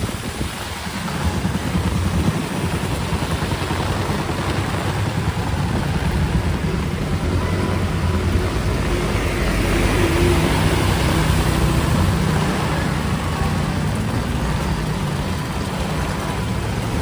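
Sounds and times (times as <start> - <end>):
heavy rain on a street: 0.0 - 17.0
traffic rumble: 0.0 - 17.0.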